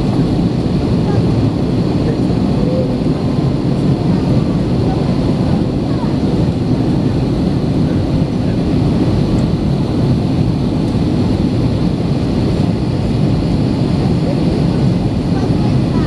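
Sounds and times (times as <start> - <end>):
aircraft cabin engine rumble: 0.0 - 16.0.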